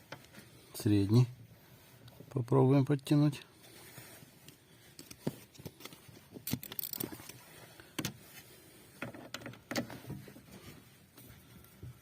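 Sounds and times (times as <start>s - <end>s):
ratchet wrench clicking: 6.5s - 7.0s.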